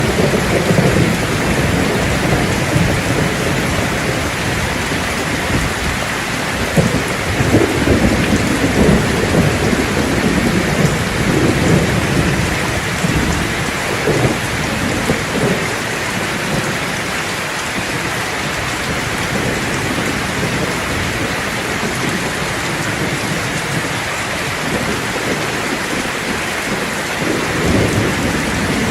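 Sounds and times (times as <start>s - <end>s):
heavy rain pouring: 0.0s - 28.9s.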